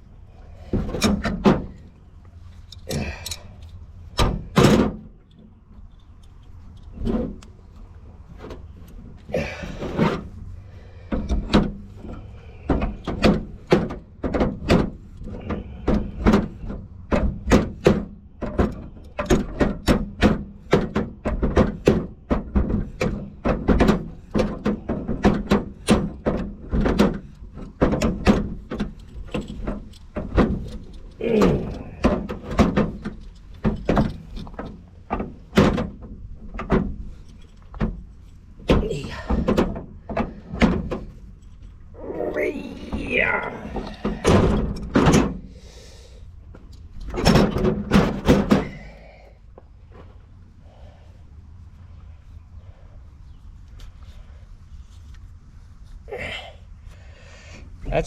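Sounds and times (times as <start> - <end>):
hand tools clicking on metal: 2.7 - 3.7.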